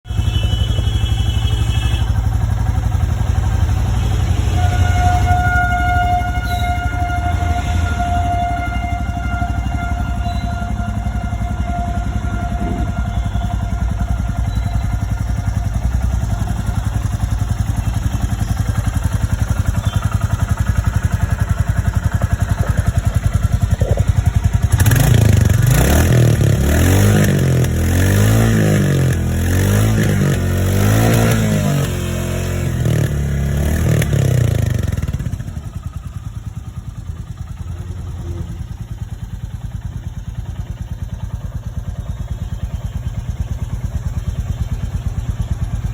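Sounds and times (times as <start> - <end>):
motorcycle engine idling: 0.0 - 45.9
throttle blips: 22.4 - 25.2.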